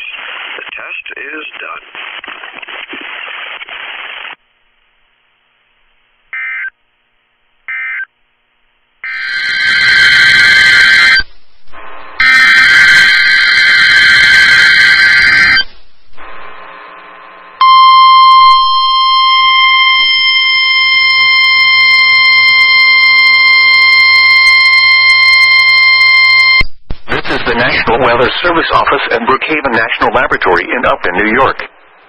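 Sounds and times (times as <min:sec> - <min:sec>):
steady warning alarm tone: 0:09.0 - 0:11.3, 0:12.2 - 0:15.7, 0:17.6 - 0:26.6.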